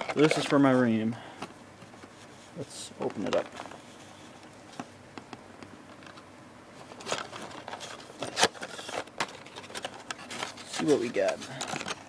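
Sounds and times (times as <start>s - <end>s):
cardboard crinkling and scraping: 0.0s - 1.0s, 1.9s - 4.9s, 6.8s - 12.0s.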